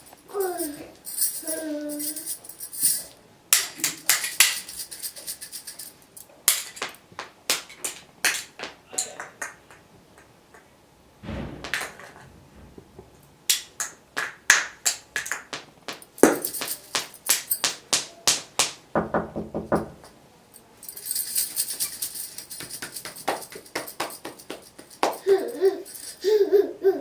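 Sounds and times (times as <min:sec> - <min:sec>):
high jingling rattle: 0:00.0 - 0:06.8, 0:16.0 - 0:17.9, 0:20.6 - 0:26.7.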